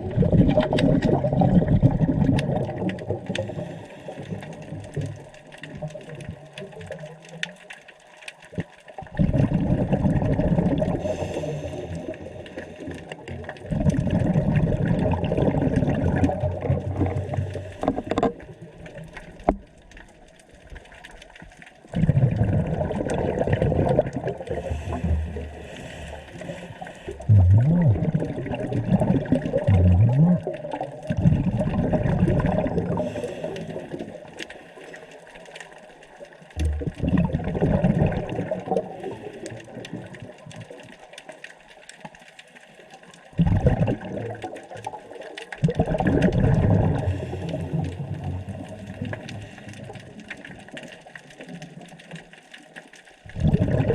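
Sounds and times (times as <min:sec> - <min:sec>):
exhaled bubbles underwater: 0:00.0 - 0:53.9.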